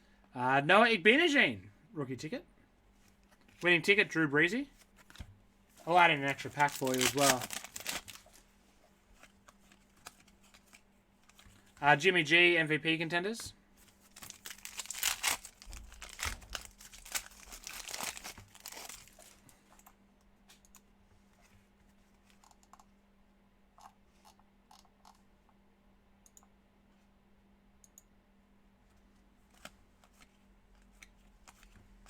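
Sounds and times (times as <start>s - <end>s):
wrapper tearing and crinkling: 5.9s - 8.4s, 14.0s - 19.4s.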